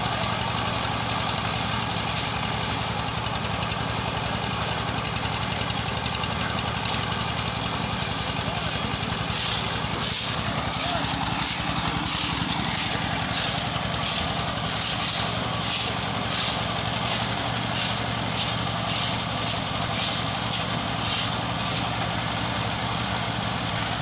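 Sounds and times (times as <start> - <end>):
heavy machine engine idling: 0.0 - 24.0
short hissing or scraping: 9.2 - 21.9.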